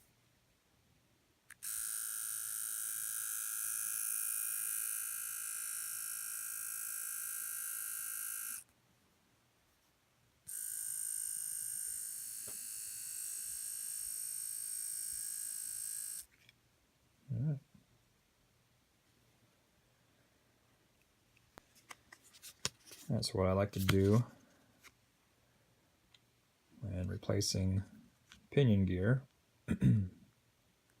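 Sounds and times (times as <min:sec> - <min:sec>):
small motor whining: 0:01.6 - 0:08.6, 0:10.5 - 0:16.3.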